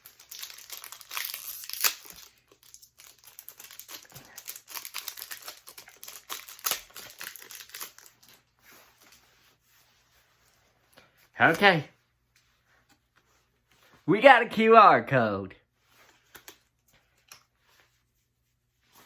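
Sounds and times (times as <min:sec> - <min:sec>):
foil wrapper crinkling: 0:00.0 - 0:09.2.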